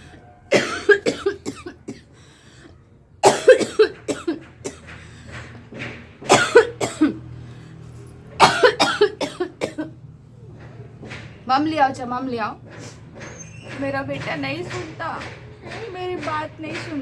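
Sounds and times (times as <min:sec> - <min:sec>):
woman coughing: 0:00.5 - 0:02.1, 0:03.2 - 0:04.8, 0:06.3 - 0:07.2, 0:08.4 - 0:09.9.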